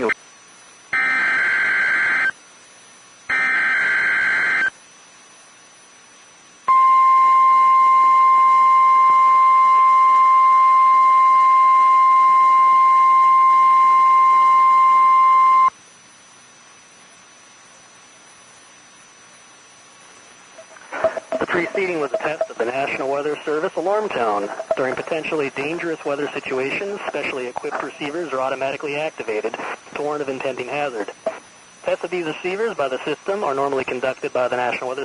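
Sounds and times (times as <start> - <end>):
faint radio hiss: 0.0 - 35.0
steady high warning beep: 0.9 - 2.4, 3.3 - 4.7, 6.7 - 15.8, 20.6 - 26.1
buzzy warble of switching tones: 20.6 - 23.0, 24.2 - 25.2.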